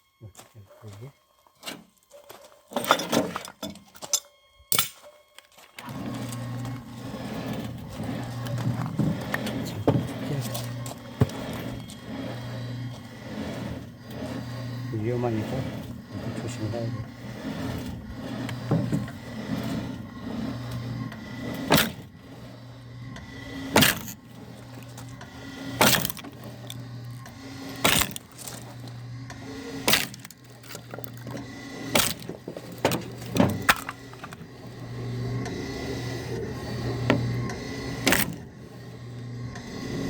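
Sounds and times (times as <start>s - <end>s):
electric motor humming: 5.0s - 40.0s
log splitter knocking: 23.4s - 34.8s.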